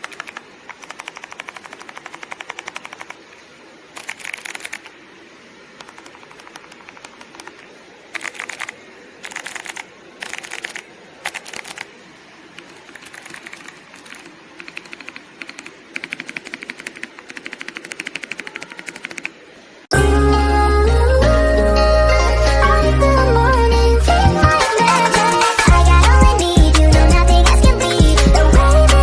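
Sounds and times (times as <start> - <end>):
clicky keyboard switches clicking: 12.6 - 19.3.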